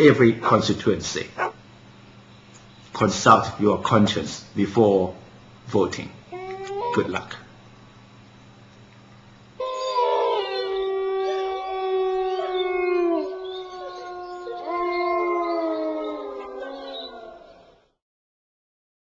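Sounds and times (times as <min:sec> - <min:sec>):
dogs howling: 0:01.4 - 0:01.6, 0:09.6 - 0:18.0.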